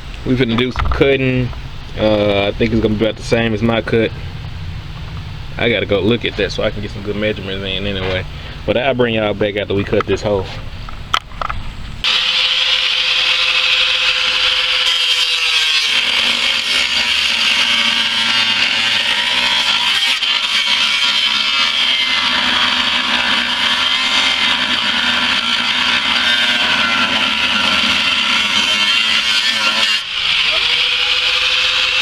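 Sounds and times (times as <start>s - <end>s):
angle grinder cutting steel: 12.0s - 32.0s.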